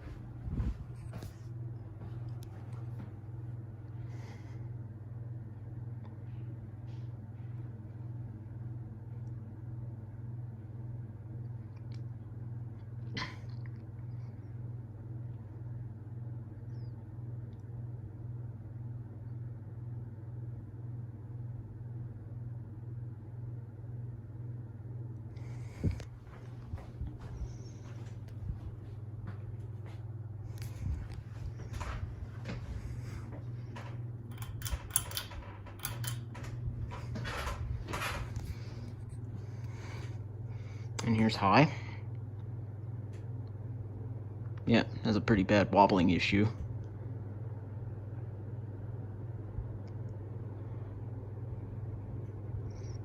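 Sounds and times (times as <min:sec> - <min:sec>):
fan whooshing: 0:00.0 - 0:05.6, 0:25.0 - 0:42.1
ceiling fan motor hum: 0:00.0 - 0:53.0
fan clicks: 0:25.3 - 0:40.3, 0:40.9 - 0:41.4, 0:42.1 - 0:43.6.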